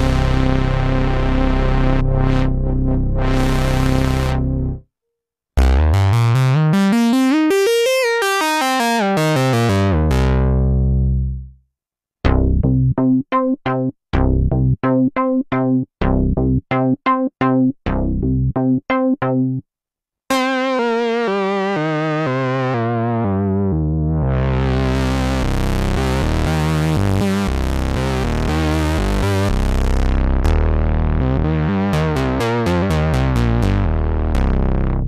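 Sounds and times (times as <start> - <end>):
analog synthesizer playing: 0.0 - 4.9, 5.6 - 11.5, 20.3 - 35.0.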